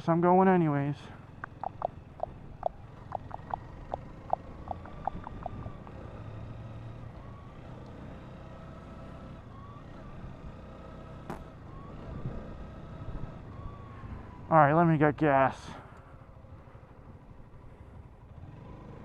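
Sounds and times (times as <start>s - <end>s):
road and wind noise: 0.0s - 19.0s
motorcycle engine running: 1.1s - 7.8s
short ticks: 1.4s - 5.9s.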